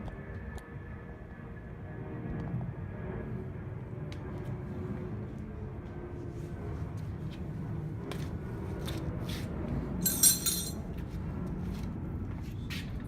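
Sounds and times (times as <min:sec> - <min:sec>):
steady low hum: 0:00.0 - 0:13.0
bright metal clink: 0:10.0 - 0:10.8
metal tools knocking: 0:10.0 - 0:10.8.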